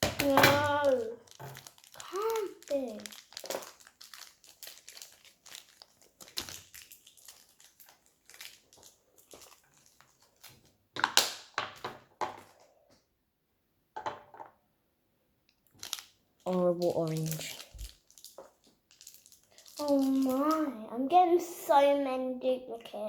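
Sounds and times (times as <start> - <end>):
plastic packaging crinkling and tearing: 0.0 - 11.5, 15.7 - 20.8.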